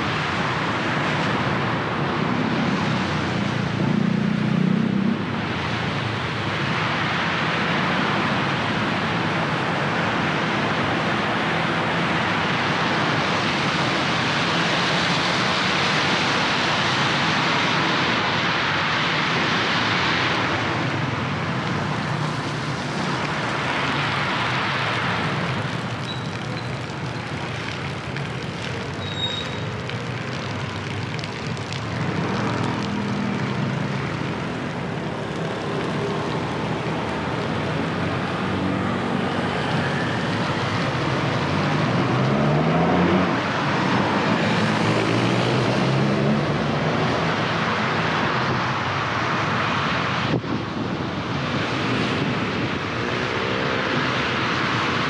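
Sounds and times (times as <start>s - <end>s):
tyres hissing on wet road: 0.0s - 55.0s
vehicle engines accelerating: 19.7s - 49.1s.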